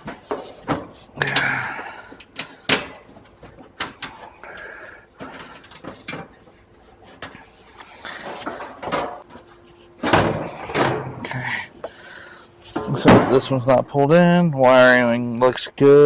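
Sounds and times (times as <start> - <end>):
sheet-metal panels knocking and scraping: 0.0 - 1.5, 2.2 - 4.3, 5.2 - 11.4, 12.7 - 13.6.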